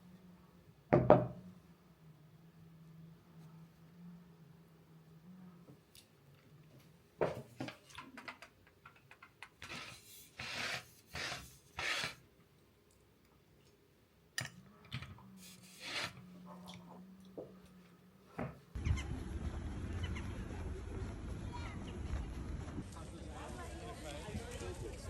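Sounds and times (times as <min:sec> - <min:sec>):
rubbing or scraping sweeps: 0:15.4 - 0:16.4.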